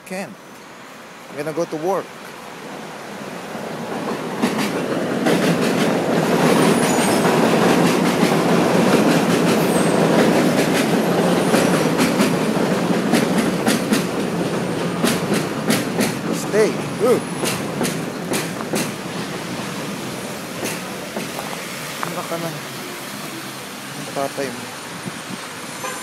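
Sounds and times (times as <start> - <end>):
train rumbling past: 0.7 - 26.0
wheels clicking over rail joints: 3.9 - 22.3.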